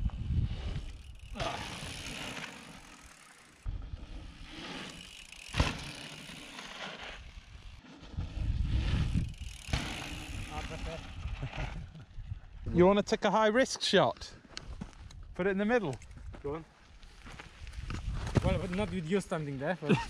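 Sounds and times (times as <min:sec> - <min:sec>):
wind on microphone: 0:00.0 - 0:01.0, 0:08.0 - 0:12.8.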